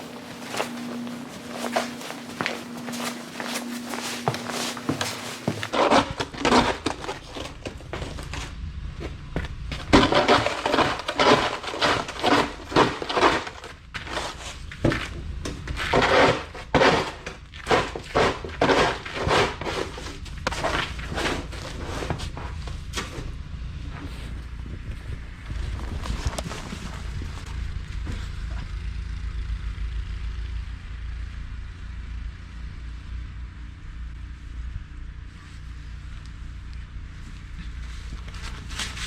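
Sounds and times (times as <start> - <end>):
snow crunching: 0.0 - 29.1
low steady rumble: 0.0 - 39.0.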